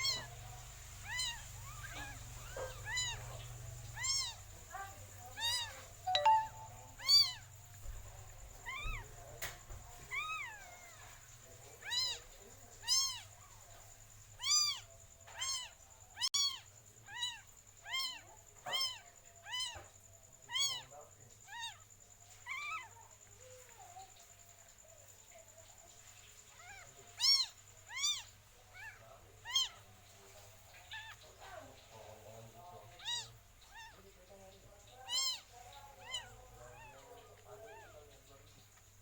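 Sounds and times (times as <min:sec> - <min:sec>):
cat mewing: 0:01.0 - 0:04.5, 0:11.8 - 0:13.2, 0:26.6 - 0:29.8, 0:33.0 - 0:34.0, 0:35.1 - 0:37.1.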